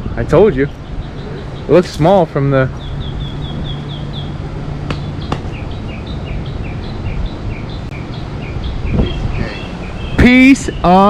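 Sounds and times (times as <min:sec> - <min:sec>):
songbird singing high notes: 0:00.5 - 0:11.0.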